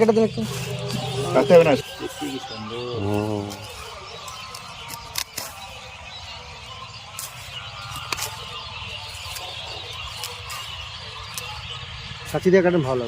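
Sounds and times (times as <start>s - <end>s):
lettuce stems snapping: 4.4s - 5.6s, 7.1s - 8.5s.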